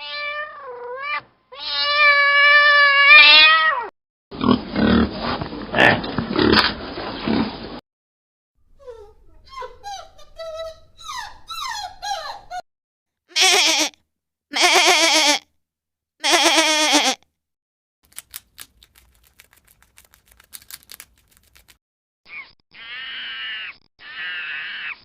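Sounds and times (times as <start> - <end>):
goat or sheep bleating: 13.3 - 15.4, 16.2 - 17.2.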